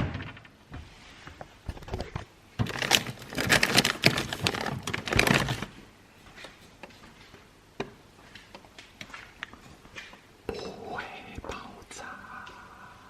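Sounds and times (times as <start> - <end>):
objects clattering and rustling: 0.0 - 10.3.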